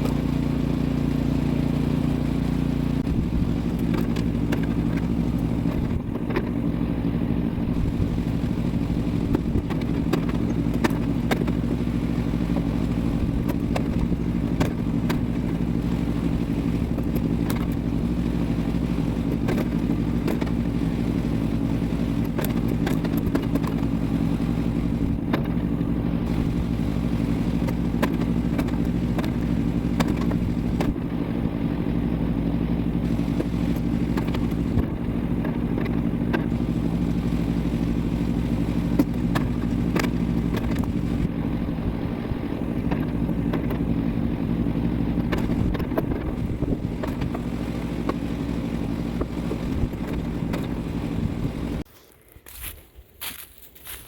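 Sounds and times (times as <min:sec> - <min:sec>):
small gasoline engine running: 0:00.0 - 0:51.9.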